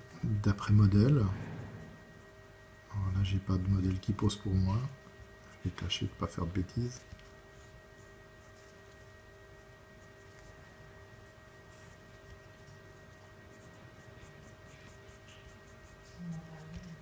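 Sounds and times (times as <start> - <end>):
faint hum: 0.0 - 17.0
pencil scratching on paper: 7.6 - 17.0.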